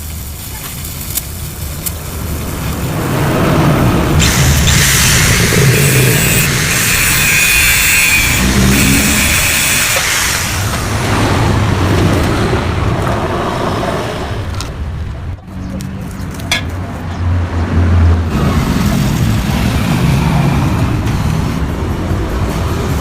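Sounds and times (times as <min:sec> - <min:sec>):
vehicle engine running: 0:00.0 - 0:23.0.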